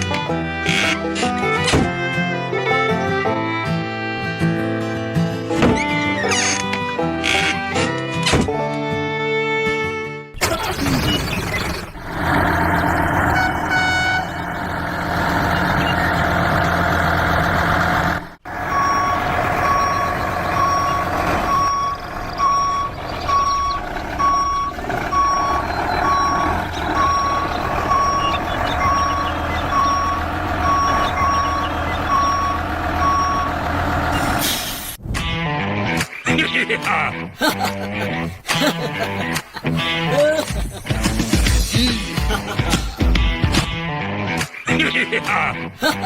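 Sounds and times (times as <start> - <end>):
truck engine running: 10.4 - 35.0, 37.4 - 43.6
reversing alarm beeping: 18.5 - 34.6.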